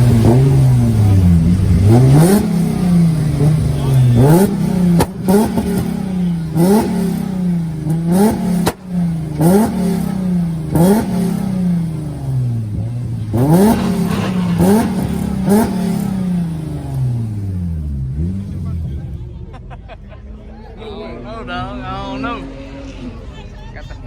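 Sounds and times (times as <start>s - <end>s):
exhaust cracks: 0.0s - 19.2s
car engine revving: 0.0s - 19.8s.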